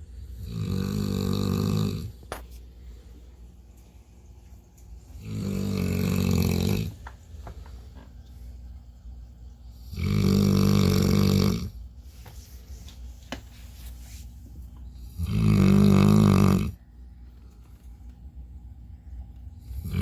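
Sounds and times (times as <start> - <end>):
pet snoring: 0.2 - 2.2, 5.1 - 7.0, 9.7 - 11.8, 15.0 - 16.8, 19.6 - 20.0.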